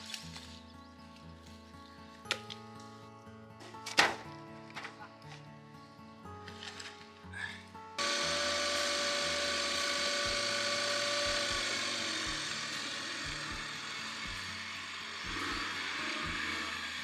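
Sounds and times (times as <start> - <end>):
background music: 0.0 - 17.0
power tool whining: 8.0 - 17.0.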